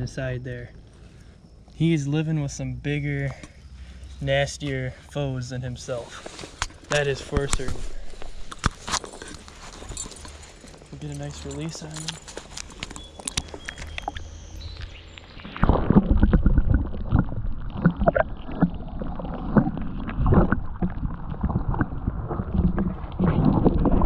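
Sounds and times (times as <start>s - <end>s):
water sloshing and gurgling: 3.0s - 24.0s.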